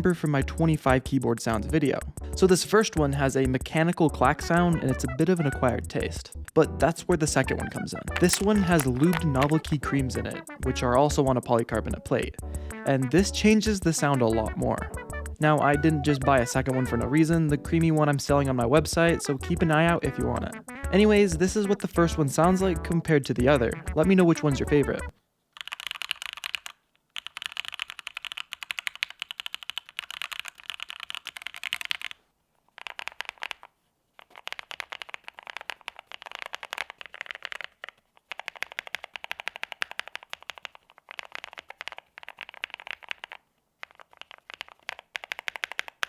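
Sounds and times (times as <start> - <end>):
mechanical keyboard typing: 7.8 - 9.7, 23.8 - 32.2, 32.8 - 46.0.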